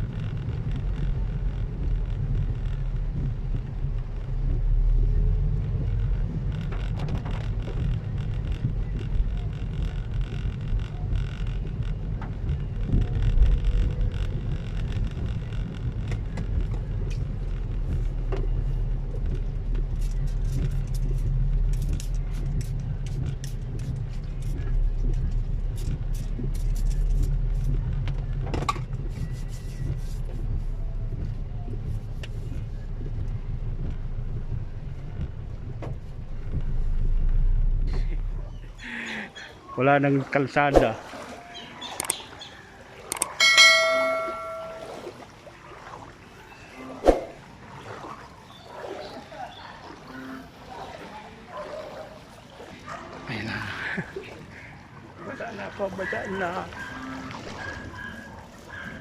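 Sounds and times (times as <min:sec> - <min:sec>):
vehicle rumble: 0:00.0 - 0:39.8.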